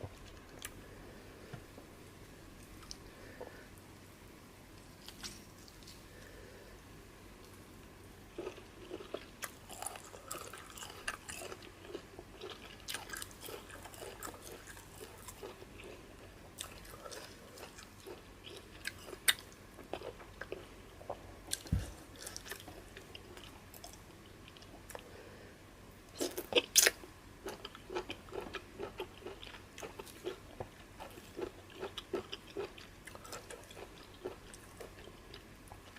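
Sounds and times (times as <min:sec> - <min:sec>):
chewing with wet mouth noises: 0:08.3 - 0:25.1, 0:26.2 - 0:35.9.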